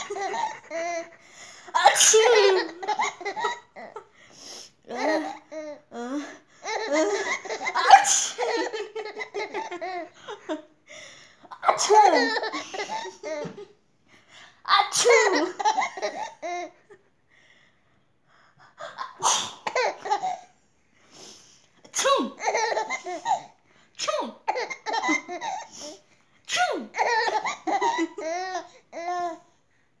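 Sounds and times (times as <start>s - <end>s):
baby laughing: 0.0s - 4.0s, 4.9s - 5.8s, 6.6s - 10.5s, 11.5s - 13.6s, 14.7s - 16.8s, 18.9s - 20.5s, 22.3s - 23.5s, 24.4s - 26.0s, 26.8s - 29.4s
woman fake sneezing: 1.8s - 2.6s, 7.8s - 8.5s, 14.8s - 15.4s, 19.2s - 19.6s, 21.9s - 22.4s, 24.0s - 24.4s, 25.8s - 27.0s.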